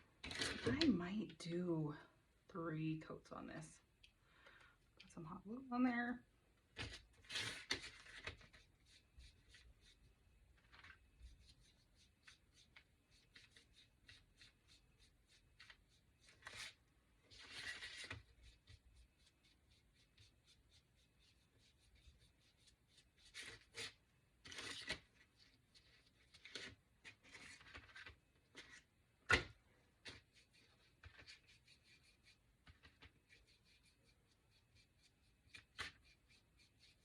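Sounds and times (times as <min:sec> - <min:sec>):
paintbrush scratching on wood: 0:08.4 - 0:10.2, 0:11.2 - 0:23.9, 0:30.1 - 0:37.0.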